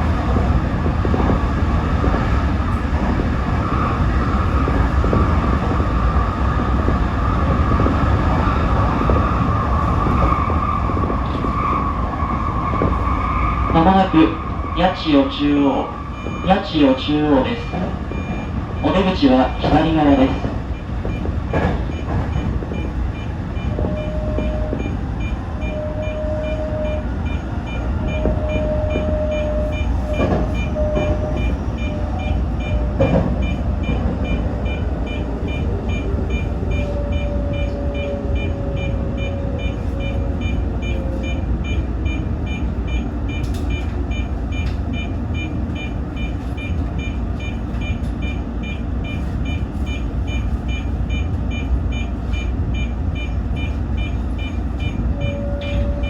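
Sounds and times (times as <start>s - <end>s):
electric train running and braking: 0.0s - 56.0s
faint high beep: 22.8s - 56.0s.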